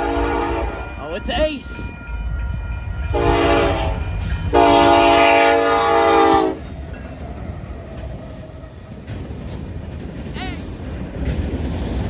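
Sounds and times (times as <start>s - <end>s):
truck air horn blasts: 0.0s - 0.8s, 3.1s - 6.6s.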